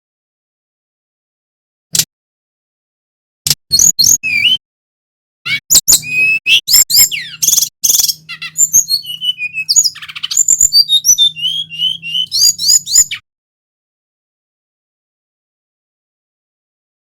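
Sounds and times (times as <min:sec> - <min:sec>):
bird singing whistles and trills: 0:03.7 - 0:04.6, 0:05.5 - 0:13.2.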